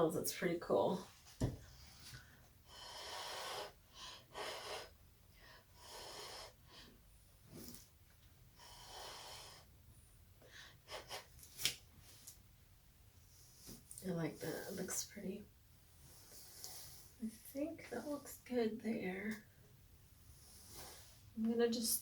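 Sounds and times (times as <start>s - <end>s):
puffs of air blown by mouth: 20.3s - 21.4s.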